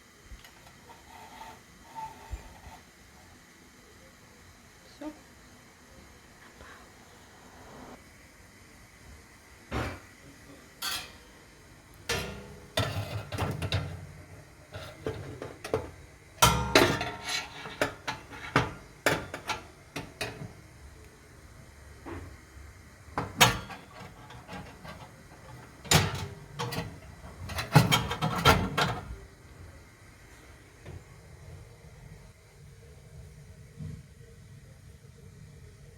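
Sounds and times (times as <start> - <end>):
metal parts clinking and knocking: 23.2 - 29.1.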